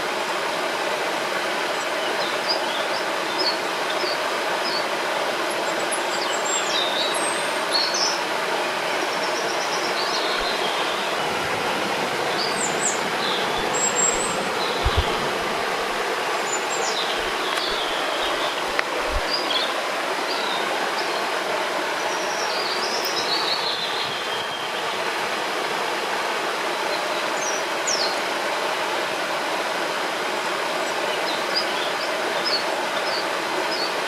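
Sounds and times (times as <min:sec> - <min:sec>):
river rushing: 0:00.0 - 0:34.0
birds chirping and trilling: 0:09.0 - 0:21.2
low thuds: 0:13.5 - 0:16.0.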